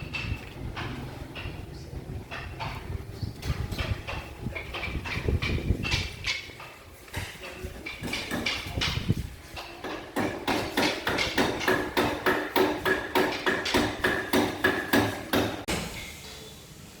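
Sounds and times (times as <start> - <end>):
mallet striking chisel: 8.0 - 9.0, 9.6 - 15.8.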